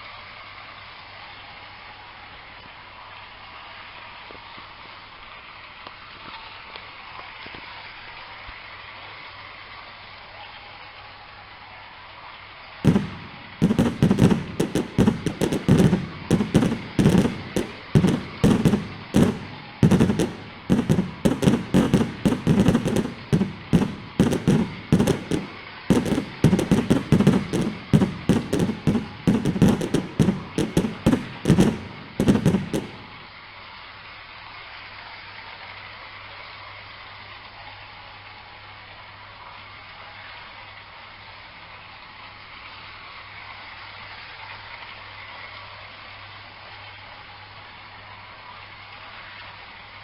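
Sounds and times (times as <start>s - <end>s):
fireworks banging: 12.9s - 33.3s.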